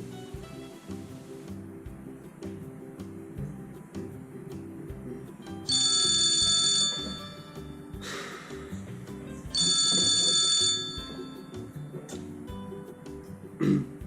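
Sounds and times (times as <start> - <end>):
background music: 0.0 - 14.0
telephone ringing: 5.7 - 7.8, 9.5 - 11.6.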